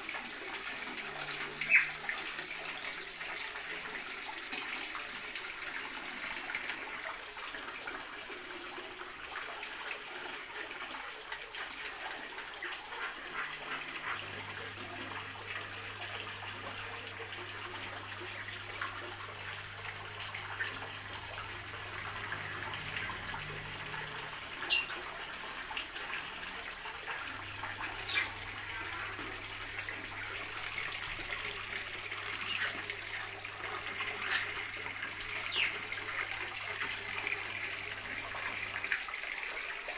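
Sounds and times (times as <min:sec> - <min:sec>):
sharp bird calls: 0:01.6 - 0:02.0, 0:24.6 - 0:25.0, 0:27.9 - 0:28.4
small birds chirping: 0:01.6 - 0:02.0, 0:24.6 - 0:25.0, 0:27.8 - 0:28.8, 0:35.3 - 0:35.8.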